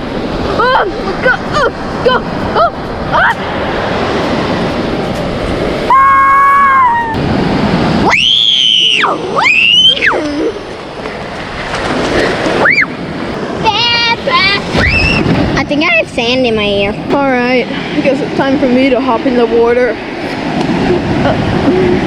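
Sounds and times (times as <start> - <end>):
surf: 0.0 - 22.0
wind: 0.0 - 22.0
loud squealing cries: 5.9 - 7.2.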